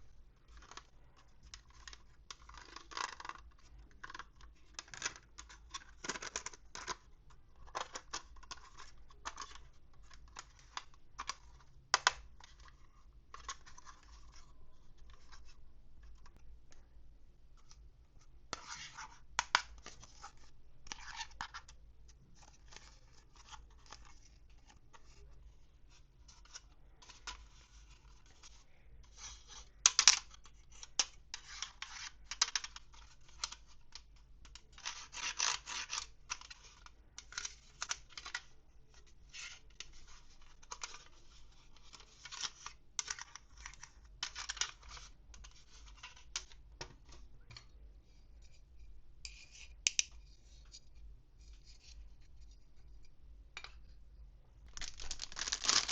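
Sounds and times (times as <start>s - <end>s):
toy packaging crinkling and tearing: 54.7s - 55.9s.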